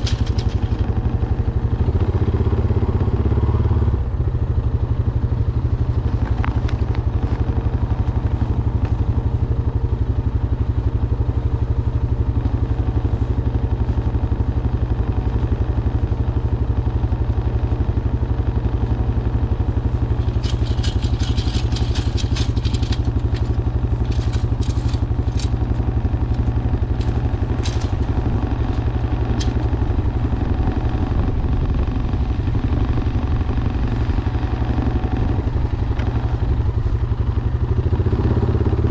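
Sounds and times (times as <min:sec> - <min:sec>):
sharp clicks and rattles: 0:00.0 - 0:01.3, 0:19.9 - 0:38.9
atv engine running: 0:00.0 - 0:38.9.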